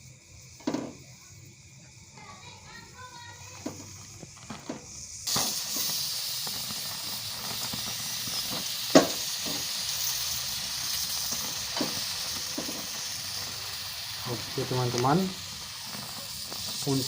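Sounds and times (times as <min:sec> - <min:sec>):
limes sizzling over flame: 0:00.0 - 0:17.0
sharp pop: 0:00.6 - 0:01.0, 0:04.5 - 0:06.6, 0:08.4 - 0:09.7, 0:11.3 - 0:12.9
small crackles: 0:02.2 - 0:17.0.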